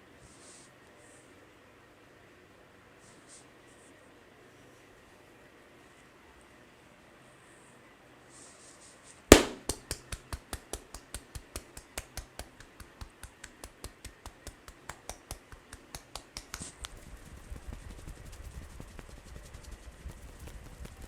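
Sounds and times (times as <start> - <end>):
hands striking head: 9.3 - 16.8.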